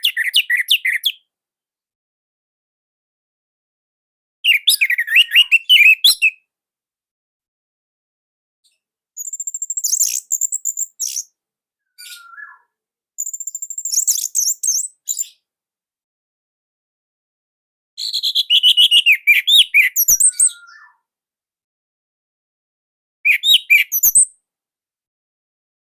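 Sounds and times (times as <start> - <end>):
low bird whistle: 4.4 - 6.4, 11.9 - 15.4, 18.0 - 21.0, 23.3 - 24.3.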